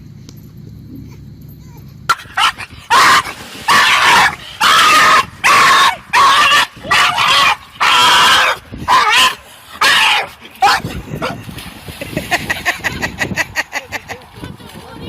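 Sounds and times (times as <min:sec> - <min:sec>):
dog barking: 0:02.1 - 0:08.0.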